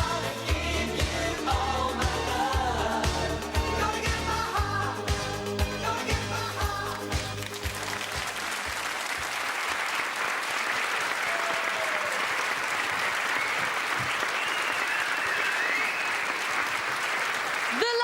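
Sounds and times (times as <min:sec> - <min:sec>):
crowd applauding: 0:07.2 - 0:18.0.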